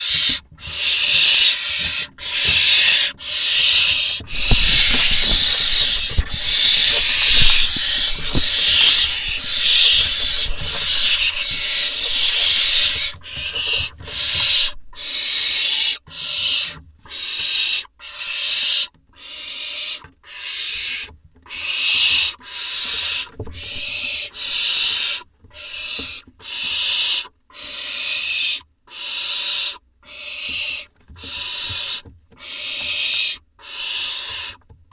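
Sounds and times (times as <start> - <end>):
owl nestlings hissing: 0.0 - 34.6
low thumping and scuffling: 3.9 - 15.0.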